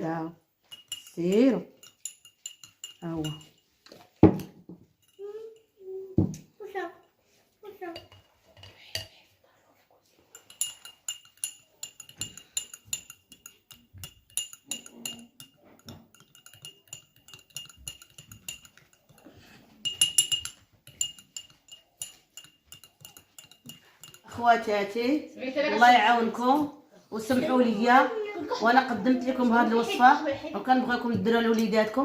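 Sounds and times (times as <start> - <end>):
spoon clinking against container: 0.6 - 6.4, 7.8 - 9.2, 10.2 - 24.6.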